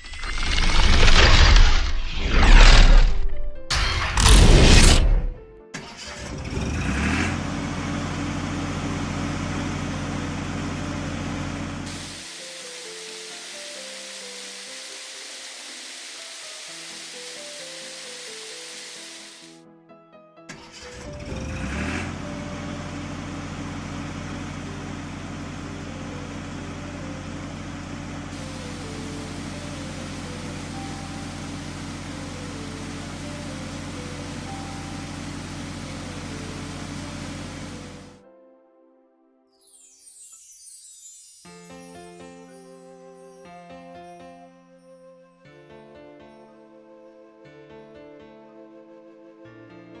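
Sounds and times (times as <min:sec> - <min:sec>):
vehicle engine revving: 0:06.0 - 0:12.0, 0:20.7 - 0:38.2
faint tune: 0:22.2 - 0:38.2.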